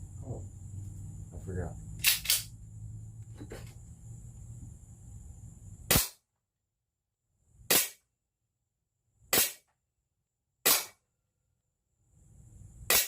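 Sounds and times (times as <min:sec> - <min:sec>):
low steady hum: 0:00.0 - 0:05.9
air pistol shots: 0:02.0 - 0:02.5, 0:05.9 - 0:06.3, 0:07.7 - 0:08.0, 0:09.3 - 0:09.7, 0:10.6 - 0:11.0.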